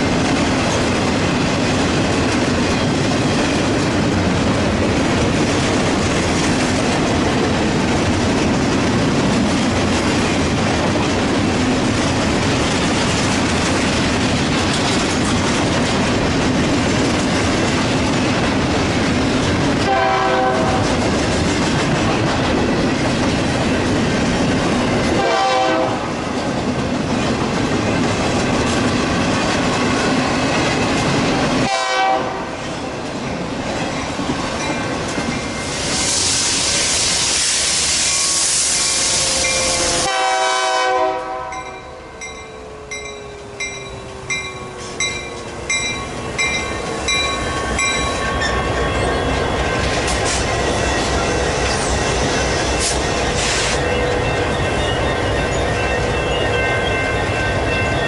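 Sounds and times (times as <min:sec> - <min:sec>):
train wheels rumbling on rails: 0:00.0 - 0:58.0
train horn blasts: 0:19.8 - 0:21.0, 0:25.2 - 0:26.1, 0:31.6 - 0:32.6, 0:38.8 - 0:42.2
bell ringing: 0:41.5 - 0:49.9, 0:53.8 - 0:58.0.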